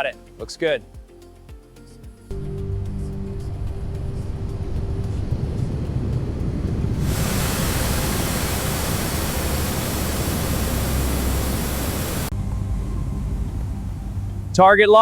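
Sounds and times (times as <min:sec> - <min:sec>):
low steady rumble: 0:02.4 - 0:14.8
pressure washer spraying water: 0:07.0 - 0:12.3.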